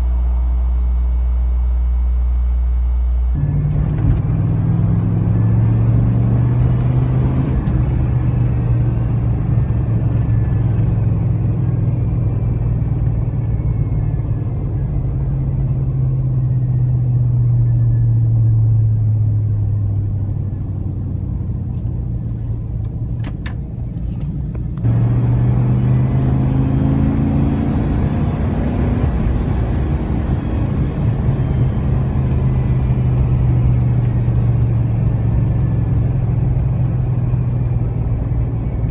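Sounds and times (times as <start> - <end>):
truck exhaust drone from cab: 0.0 - 38.9.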